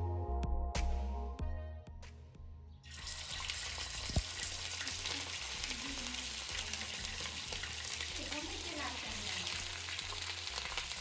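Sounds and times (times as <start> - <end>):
background music: 0.0 - 11.0
food deep-frying in oil: 2.9 - 11.0.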